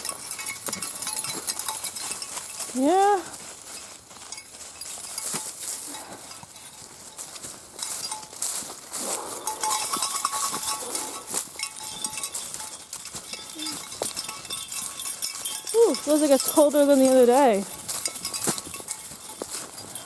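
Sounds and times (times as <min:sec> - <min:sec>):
dog collar tags jingling: 0:00.0 - 0:20.0
footsteps crunching on a trail: 0:00.0 - 0:20.0.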